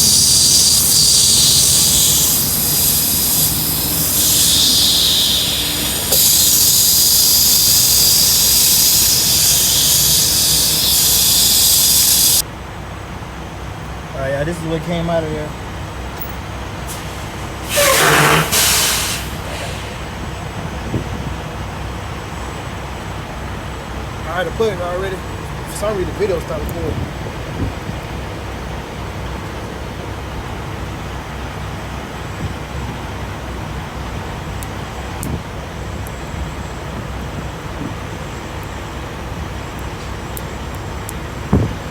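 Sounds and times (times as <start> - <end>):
air hissing from tire: 0.0 - 12.4, 16.7 - 21.3
vehicle engine rumble: 0.0 - 41.9.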